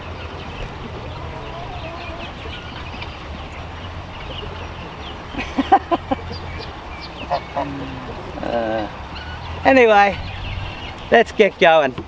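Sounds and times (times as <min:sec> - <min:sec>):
small birds twittering: 0:00.0 - 0:12.0
fowl calling: 0:00.8 - 0:11.1.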